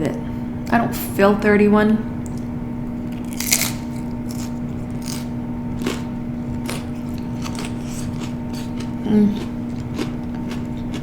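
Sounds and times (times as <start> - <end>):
person chewing crunchy food: 3.1 - 11.0.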